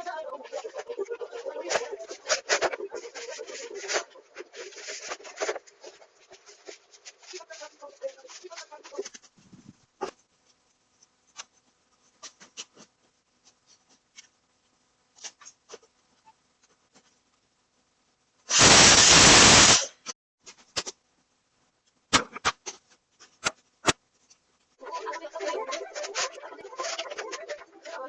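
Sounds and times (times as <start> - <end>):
loud rush of hissing: 18.5 - 20.0.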